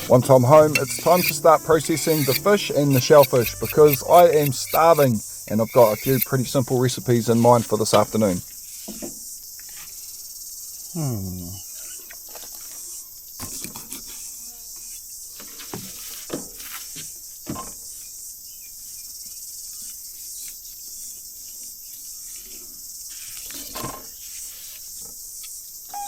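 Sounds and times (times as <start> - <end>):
high-pitched insect chorus: 0.0 - 8.4.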